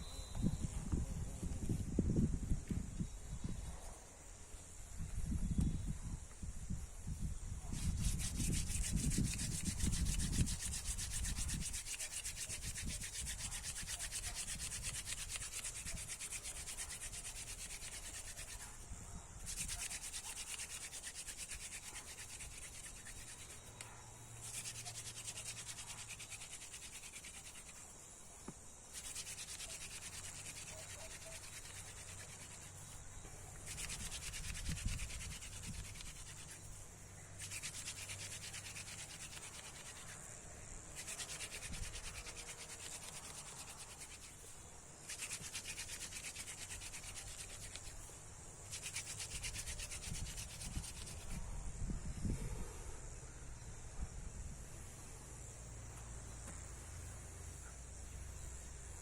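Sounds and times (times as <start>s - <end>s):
wood rasping on wood: 7.8s - 18.8s, 19.4s - 28.0s, 28.9s - 33.0s, 33.6s - 36.8s, 37.4s - 40.2s, 41.0s - 44.5s, 45.1s - 48.0s, 48.7s - 51.4s.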